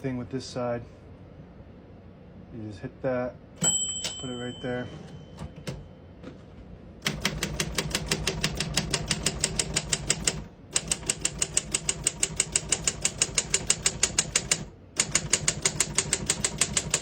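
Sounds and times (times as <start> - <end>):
typewriter clacking: 7.0 - 17.0.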